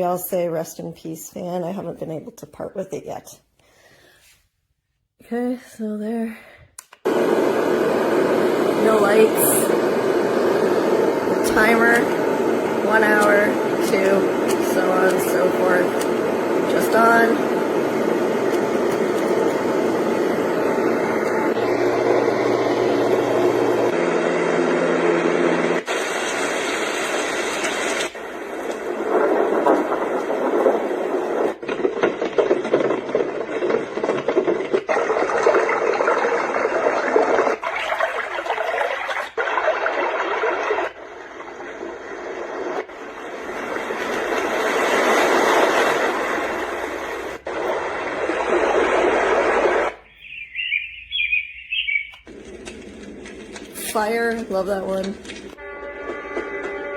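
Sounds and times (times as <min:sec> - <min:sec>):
sleep machine soothing sounds: 0:06.9 - 0:56.9
steady rushing noise: 0:07.1 - 0:37.6, 0:40.1 - 0:50.1
low hum: 0:07.1 - 0:51.5.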